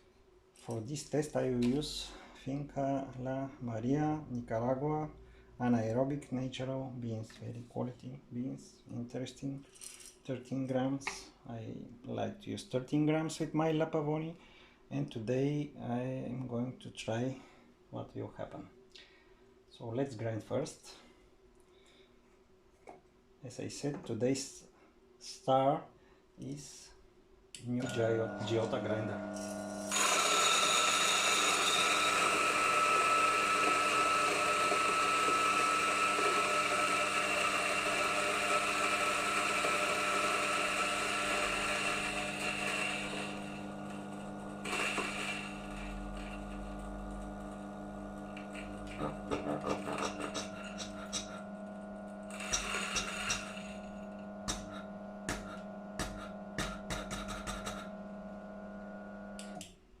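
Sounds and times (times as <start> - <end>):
coffee grinder grinding: 27.8 - 59.7.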